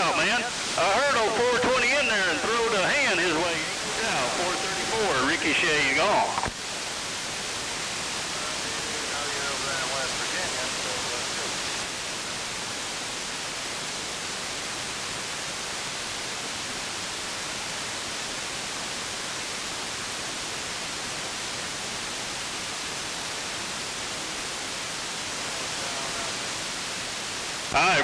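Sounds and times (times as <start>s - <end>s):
radio static hiss: 0.0s - 12.4s, 25.0s - 28.0s.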